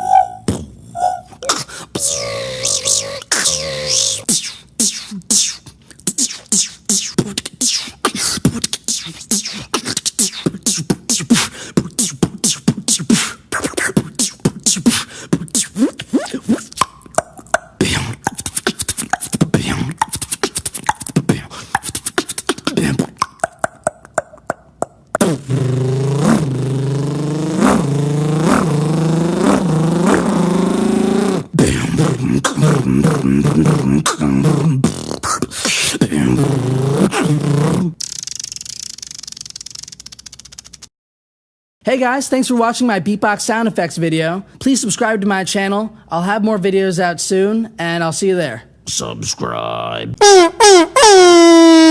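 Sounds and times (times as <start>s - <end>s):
buzzing voice swooping in pitch: 0.0s - 7.9s, 25.2s - 35.4s
beatboxing clicks and hits: 1.4s - 40.9s.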